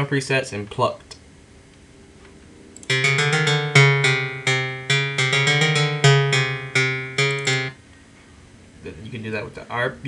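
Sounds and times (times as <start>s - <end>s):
plucked synth notes: 2.8s - 7.8s.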